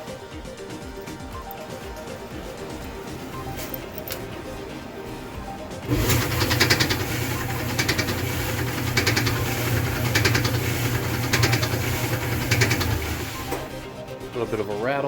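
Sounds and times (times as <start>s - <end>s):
clothes dryer motor hum: 4.4s - 14.1s
dryer drum rattle: 5.9s - 13.8s.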